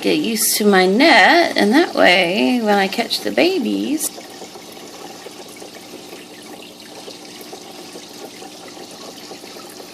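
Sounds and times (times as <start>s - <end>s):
aquarium water trickling: 0.0s - 9.9s
small bubble pops: 4.1s - 9.9s.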